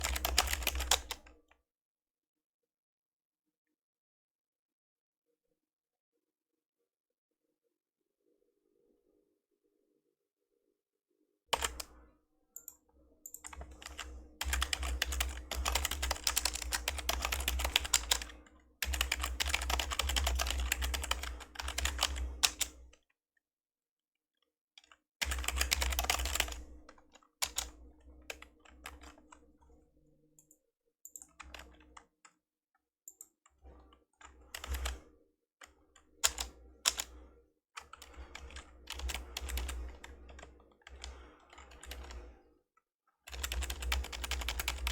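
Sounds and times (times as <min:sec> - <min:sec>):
keyboard typing: 0:00.0 - 0:01.3, 0:11.5 - 0:11.9, 0:12.6 - 0:22.8, 0:25.2 - 0:29.4, 0:34.5 - 0:35.0, 0:36.2 - 0:37.2, 0:37.8 - 0:42.2, 0:43.3 - 0:44.9.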